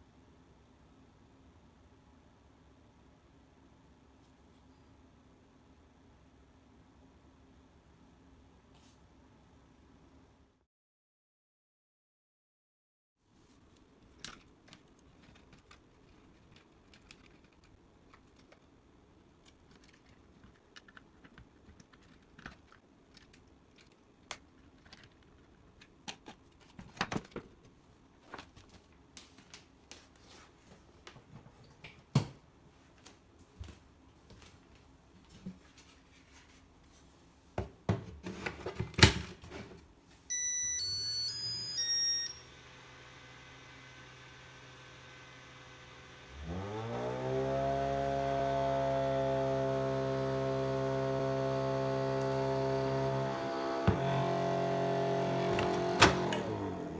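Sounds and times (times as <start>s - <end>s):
electronic jingle of beeps: 40.3s - 42.5s.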